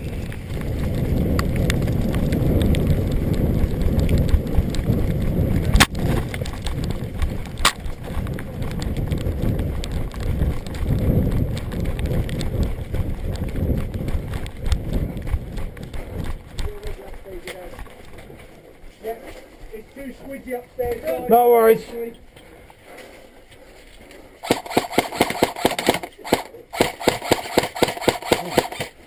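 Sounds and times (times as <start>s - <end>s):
sharp cracks: 0.0s - 17.9s, 24.4s - 29.0s
running footsteps: 0.0s - 29.0s.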